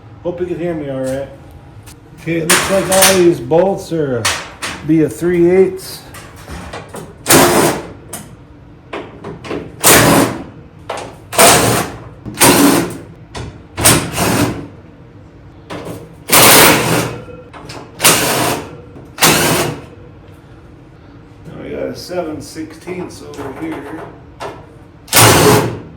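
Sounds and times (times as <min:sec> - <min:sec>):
power driver spinning bolts: 0:16.3 - 0:19.8, 0:25.1 - 0:25.8.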